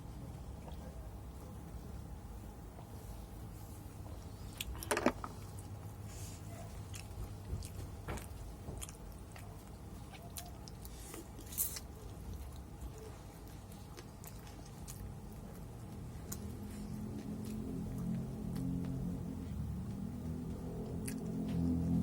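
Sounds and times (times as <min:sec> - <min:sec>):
person chewing crunchy food: 0:04.4 - 0:22.0.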